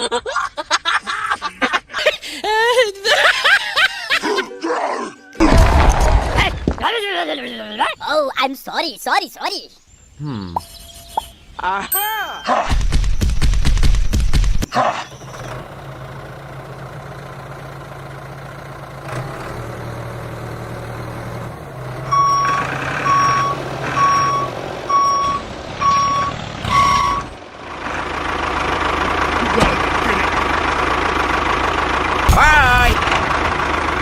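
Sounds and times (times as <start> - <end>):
vehicle reversing alarm beeping: 10.6 - 12.6, 22.1 - 27.4
loud engine noise: 14.6 - 34.0
low engine hum: 15.0 - 34.0.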